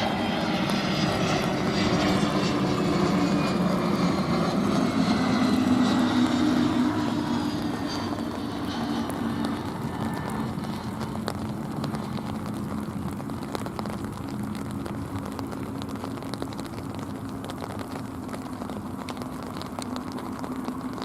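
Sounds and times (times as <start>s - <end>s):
jet engines humming: 0.0s - 21.0s
crackling clicks: 7.5s - 21.0s.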